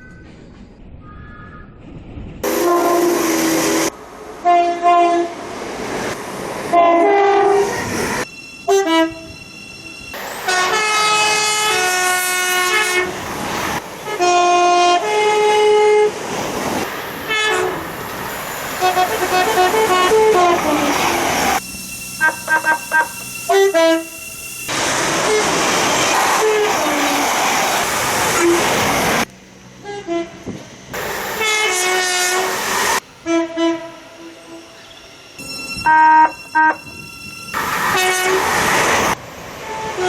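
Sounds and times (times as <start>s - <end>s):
train running noise: 0.0s - 40.0s
train horn blasts: 2.4s - 5.4s, 6.7s - 9.4s, 10.4s - 13.2s, 14.0s - 16.1s, 17.3s - 17.9s, 18.8s - 20.9s, 22.0s - 24.4s, 29.8s - 30.5s, 31.4s - 32.6s, 33.2s - 34.8s, 35.4s - 37.0s, 37.9s - 38.5s, 39.6s - 40.0s.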